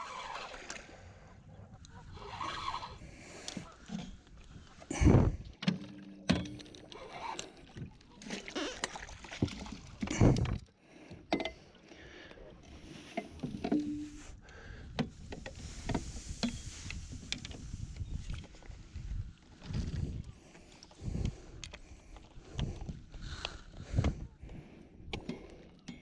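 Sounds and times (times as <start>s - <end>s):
knocks and bumps in a boat: 5.0s - 11.6s.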